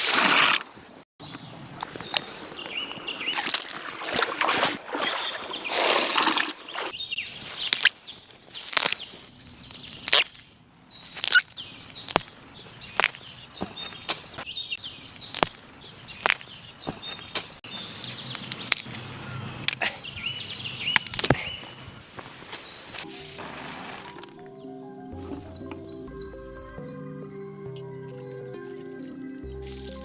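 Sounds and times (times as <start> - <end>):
birds chirping: 0.8 - 4.3, 4.9 - 30.0
river water sloshing and splashing: 3.1 - 7.0, 23.3 - 24.4.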